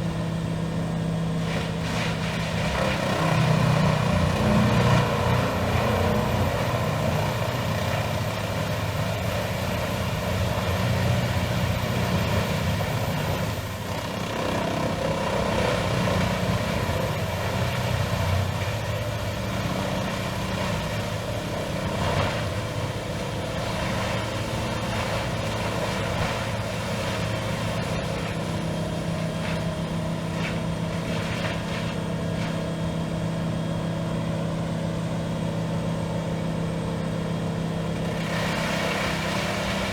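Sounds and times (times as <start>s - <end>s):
diesel shredder engine running: 0.0s - 39.9s.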